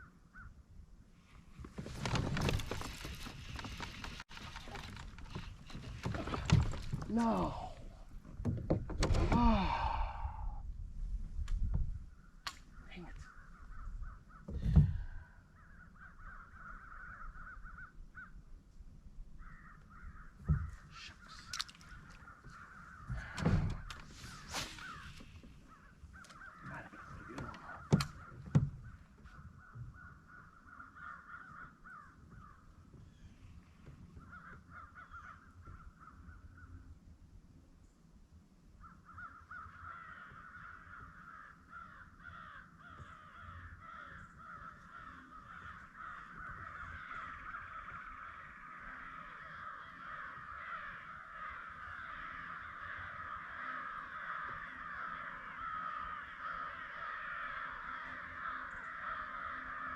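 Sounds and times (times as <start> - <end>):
flock of birds chattering: 19.4 - 36.8, 38.8 - 59.9.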